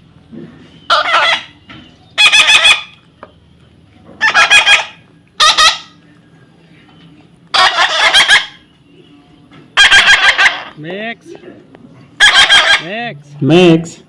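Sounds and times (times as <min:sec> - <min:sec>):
parrot calling loudly: 0:00.9 - 0:01.6, 0:02.2 - 0:03.0, 0:04.2 - 0:06.0, 0:07.5 - 0:08.7, 0:09.8 - 0:10.8, 0:12.2 - 0:13.0.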